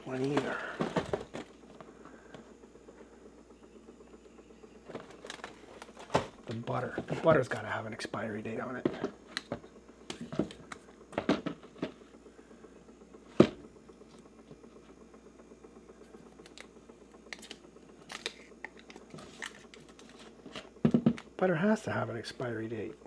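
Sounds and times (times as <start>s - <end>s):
food packages handled on shelves: 0.0s - 2.5s, 4.8s - 7.7s, 17.4s - 21.2s.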